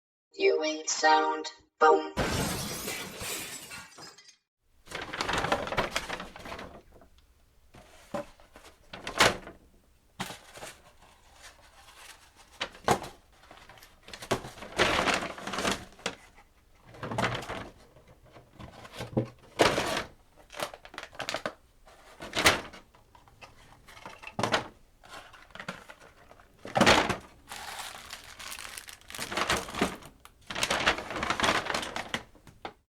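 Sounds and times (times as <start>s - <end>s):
paper bag rustling: 4.8s - 9.6s, 10.2s - 17.8s, 18.6s - 22.9s, 23.6s - 32.8s
items knocking in bag: 24.4s - 32.8s.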